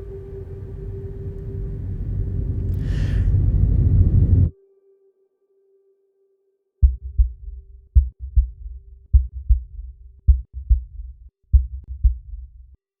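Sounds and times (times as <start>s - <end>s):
steady low tone: 0.0s - 10.0s
heartbeat thumps: 6.8s - 12.5s.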